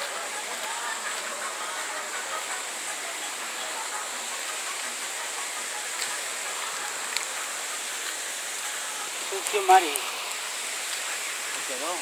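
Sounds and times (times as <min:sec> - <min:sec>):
running water: 0:00.0 - 0:12.0
thin high hiss: 0:05.8 - 0:12.0.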